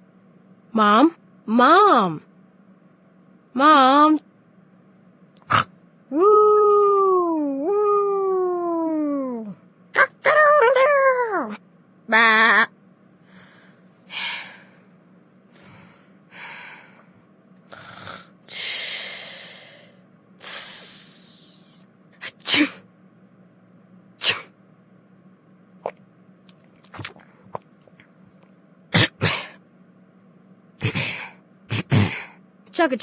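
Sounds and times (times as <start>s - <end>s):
person making breathy hisses: 17.7s - 21.8s
person making sneeze sounds: 22.2s - 22.8s, 24.2s - 24.6s, 28.9s - 29.6s, 30.8s - 32.4s.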